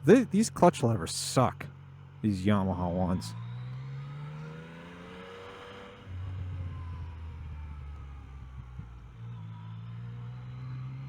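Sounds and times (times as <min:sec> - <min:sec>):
motorcycle engine running: 0:05.8 - 0:09.9.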